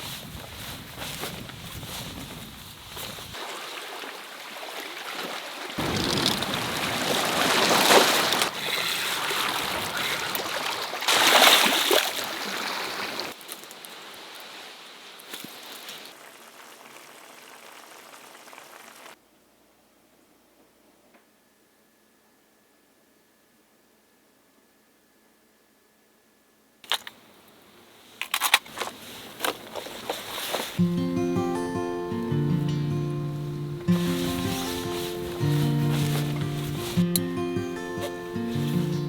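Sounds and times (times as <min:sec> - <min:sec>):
waves washing over rocky shore: 0:05.7 - 0:13.4.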